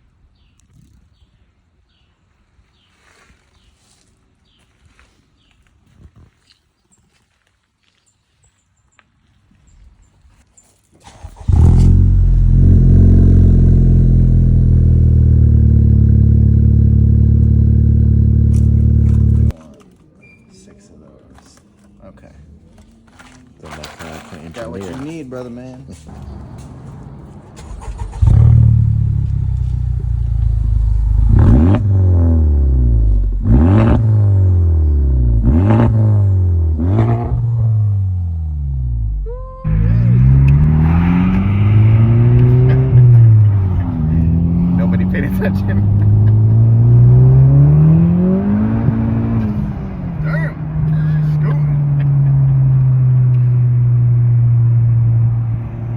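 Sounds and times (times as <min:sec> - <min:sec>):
car engine starting and idling: 0:11.0 - 0:19.6, 0:26.2 - 0:55.9.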